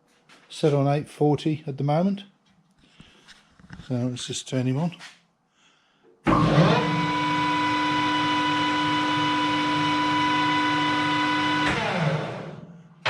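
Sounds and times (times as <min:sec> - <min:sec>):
metal lathe motor humming and whining: 0:06.3 - 0:12.6.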